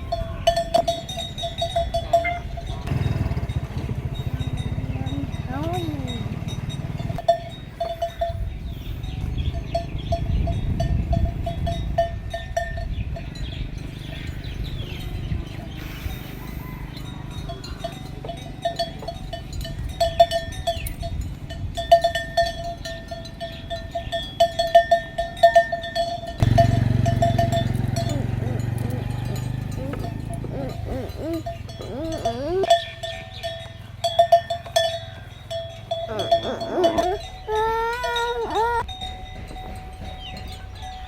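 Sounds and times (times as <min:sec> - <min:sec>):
cattle bells clanking: 0:00.0 - 0:41.0.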